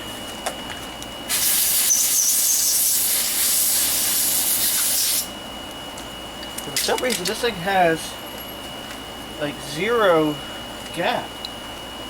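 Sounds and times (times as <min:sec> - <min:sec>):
compressed air blow gun hissing: 0:01.3 - 0:05.3.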